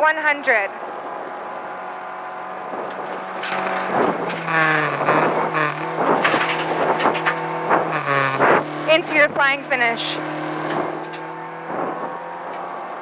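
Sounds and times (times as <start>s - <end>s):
car engine revving: 0.2s - 13.0s
knocks and clatter: 2.8s - 9.0s.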